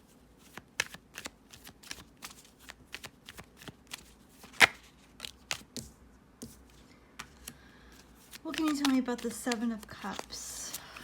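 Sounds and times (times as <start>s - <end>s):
cards being shuffled: 0.4s - 11.0s.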